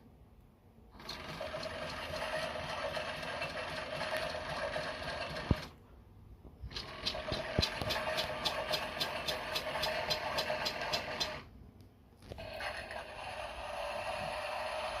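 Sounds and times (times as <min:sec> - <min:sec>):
regular mechanical clicks: 0:06.7 - 0:11.5.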